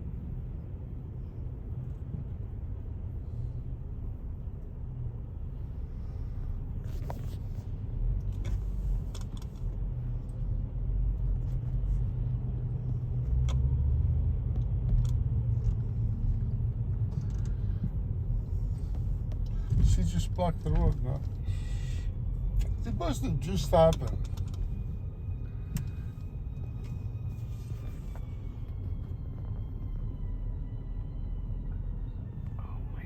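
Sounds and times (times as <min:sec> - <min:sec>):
road and engine rumble: 0:00.0 - 0:33.0.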